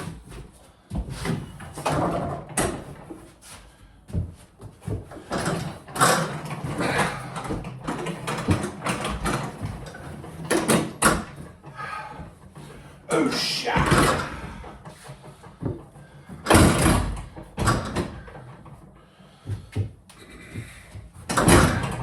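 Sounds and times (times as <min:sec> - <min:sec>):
bathtub clunking and scraping: 0:04.2 - 0:11.7, 0:12.3 - 0:18.8, 0:20.6 - 0:22.0.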